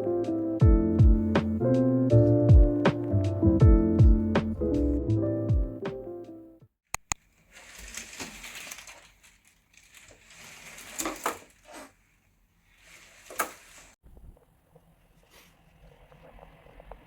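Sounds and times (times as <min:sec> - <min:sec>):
crinkling crushing handling noise: 0:07.2 - 0:12.1.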